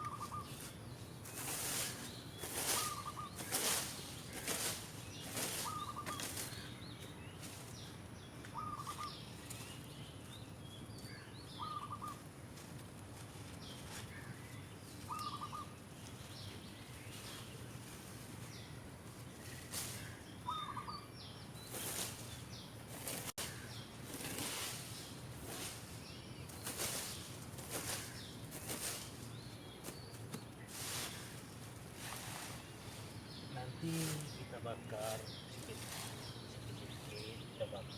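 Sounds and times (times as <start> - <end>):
broom sweeping dry leaves: 0.0 - 8.0, 16.0 - 20.9, 21.5 - 37.4
faint birds chirping: 0.0 - 37.9.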